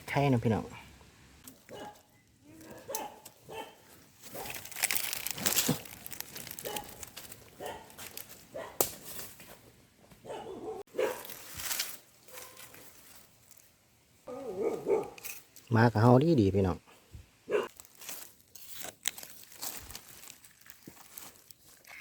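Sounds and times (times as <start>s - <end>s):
dry leaves rustling and crunching: 1.5s - 9.4s, 11.0s - 13.8s, 17.7s - 22.0s
dog barking: 1.7s - 2.1s, 2.7s - 4.6s, 6.6s - 7.0s, 7.6s - 8.8s, 10.2s - 11.3s, 14.3s - 15.2s, 17.5s - 17.7s.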